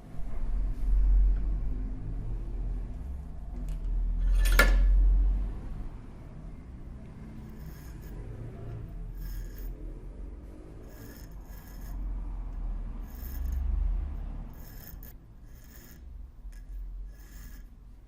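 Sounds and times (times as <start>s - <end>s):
low rumble: 0.0s - 4.2s
rasping abrasion on metal: 7.4s - 10.0s, 10.8s - 18.0s.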